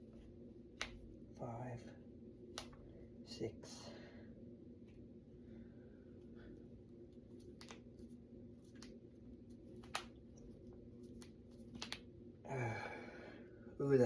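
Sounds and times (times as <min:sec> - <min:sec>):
faint low hum: 0:00.0 - 0:14.0
knuckles cracking: 0:02.5 - 0:02.8, 0:07.4 - 0:07.9, 0:11.0 - 0:12.1.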